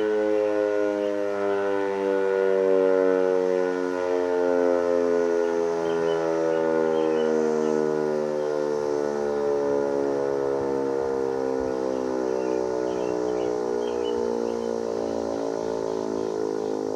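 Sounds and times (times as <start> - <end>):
outdoor warning siren: 0.0 - 16.9.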